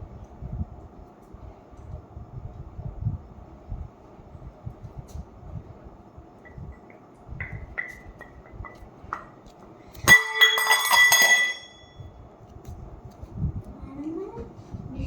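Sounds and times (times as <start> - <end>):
kitchenware clinking: 10.0 - 12.0
metal bowl clattering and ringing: 10.0 - 12.0.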